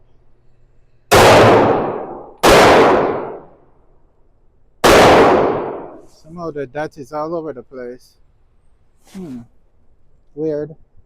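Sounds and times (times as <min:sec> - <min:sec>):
pistol shots echoing: 0:01.1 - 0:03.5, 0:04.8 - 0:06.1.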